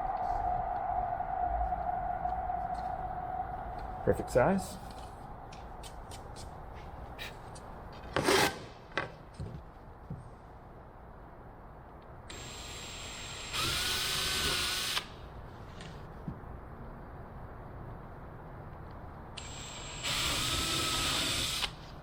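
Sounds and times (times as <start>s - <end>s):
electric drill motor whine: 12.3s - 15.1s, 19.4s - 21.7s.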